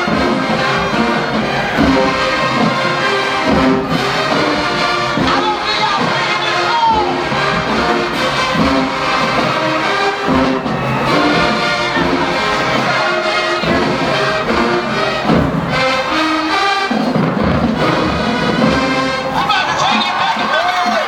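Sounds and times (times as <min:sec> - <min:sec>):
brass chords: 0:00.0 - 0:21.0
drums: 0:00.0 - 0:21.0.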